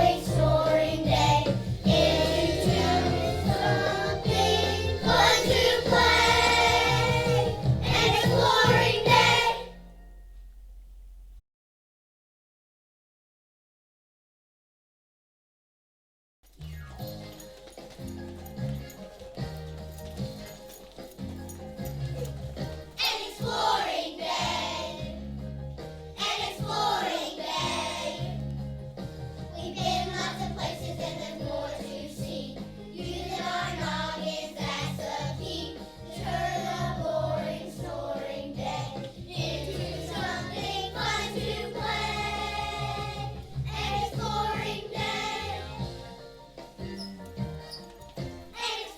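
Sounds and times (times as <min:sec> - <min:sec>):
children's choir singing: 0:00.0 - 0:09.8, 0:23.0 - 0:25.2, 0:26.2 - 0:28.4, 0:29.6 - 0:46.0, 0:48.6 - 0:48.9
instrumental accompaniment with bass: 0:00.0 - 0:11.4, 0:27.8 - 0:48.5.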